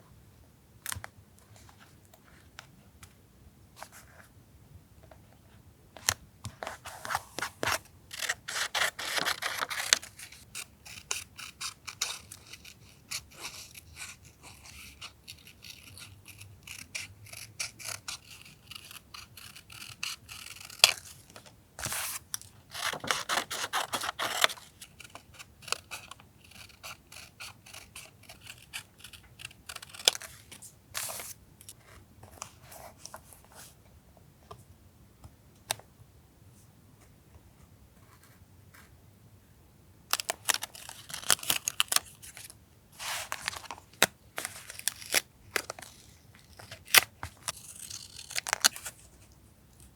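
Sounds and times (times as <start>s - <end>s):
paper rustling: 6.5s - 10.0s, 21.8s - 24.6s, 40.4s - 47.6s
scissors cutting paper: 7.1s - 21.2s, 21.8s - 31.2s, 40.1s - 43.8s, 44.4s - 49.0s.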